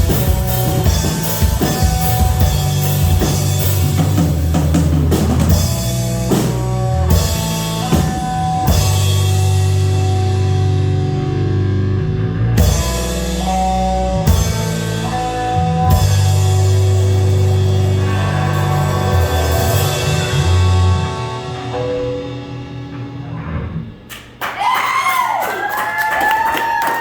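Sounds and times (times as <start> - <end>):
drum kit hits: 0.0 - 10.4, 12.6 - 23.2
bass guitar: 0.0 - 24.4
electric guitar notes: 0.0 - 24.4.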